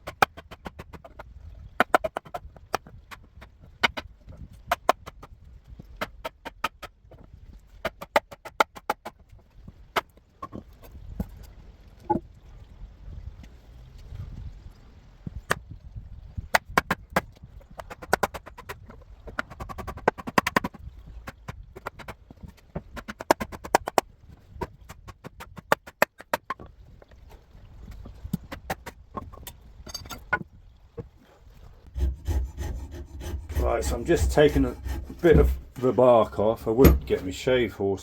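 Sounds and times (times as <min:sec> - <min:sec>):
hand tools knocking on wood: 0:32.0 - 0:37.4.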